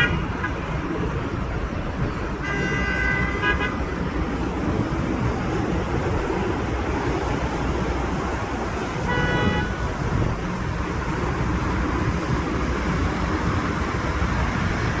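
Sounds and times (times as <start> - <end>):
road traffic: 0.0 - 15.0
wind: 0.0 - 15.0
car horn beep: 2.4 - 3.8, 9.0 - 9.7.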